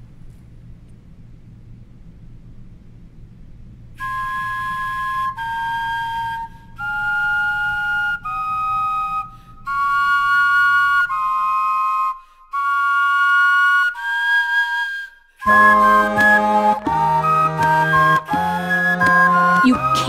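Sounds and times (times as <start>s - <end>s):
flute-like vegetable wind instruments: 4.0s - 20.0s.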